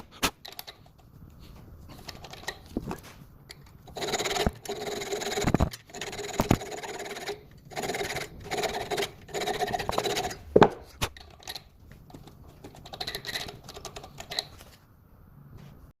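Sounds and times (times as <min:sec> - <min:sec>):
saw blade scraping metal: 0:03.9 - 0:11.6.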